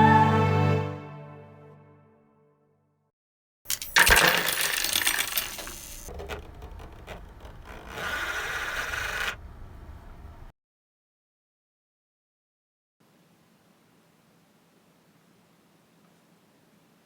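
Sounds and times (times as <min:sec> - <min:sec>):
crash clattering: 0:03.7 - 0:06.4
scraping rasping noise: 0:06.1 - 0:09.5.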